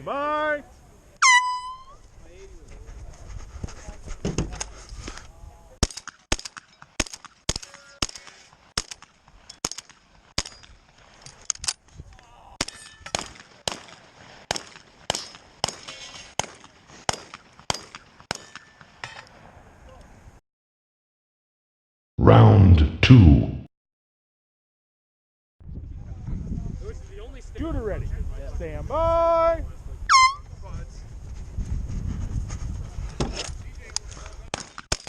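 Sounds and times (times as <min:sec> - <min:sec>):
rapid shotgun fire: 0:12.6 - 0:15.8, 0:16.4 - 0:18.4.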